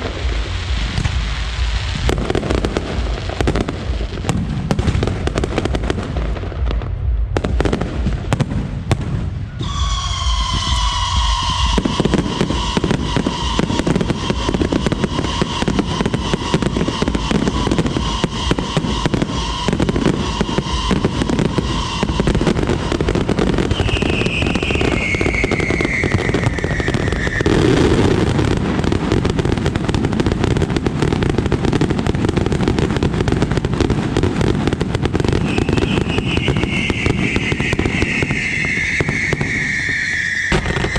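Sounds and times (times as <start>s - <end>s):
fireworks crackling and banging: 0.0s - 40.9s
falling whistle: 9.5s - 28.4s, 35.4s - 40.9s
held high tone: 9.6s - 23.0s, 23.7s - 28.1s.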